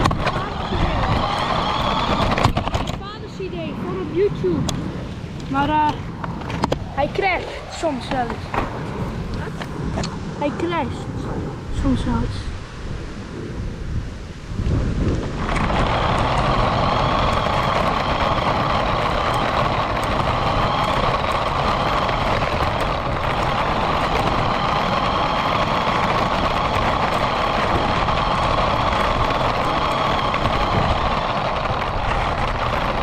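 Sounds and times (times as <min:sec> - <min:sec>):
radio-controlled car driving: 0:00.0 - 0:04.7, 0:15.4 - 0:33.0.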